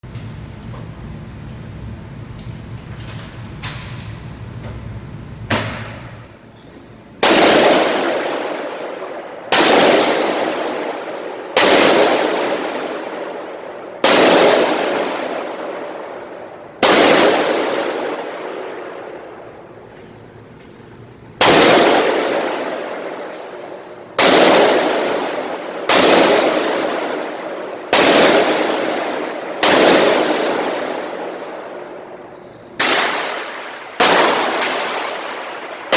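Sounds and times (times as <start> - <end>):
low steady hum: 0.0 - 35.9
gunshots with echo: 7.2 - 20.3, 21.4 - 35.9.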